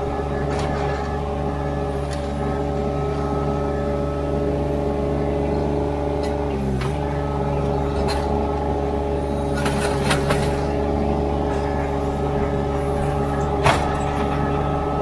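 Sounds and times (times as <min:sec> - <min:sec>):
skid steer engine running: 0:00.0 - 0:15.0
clanks and knocks: 0:11.5 - 0:15.0.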